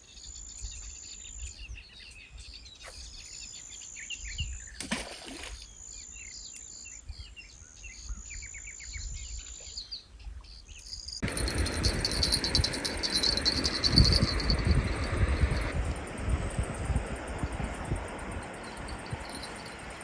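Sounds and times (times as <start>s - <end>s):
small birds chirping: 0.0s - 15.8s
high insect drone: 10.9s - 20.0s
hiss with rapid high ticking: 11.2s - 16.4s.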